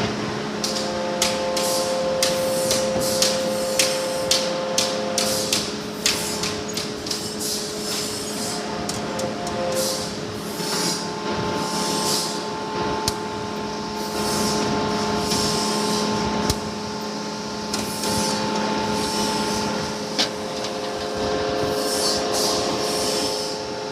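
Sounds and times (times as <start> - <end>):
steady machine hum: 0.0 - 23.9.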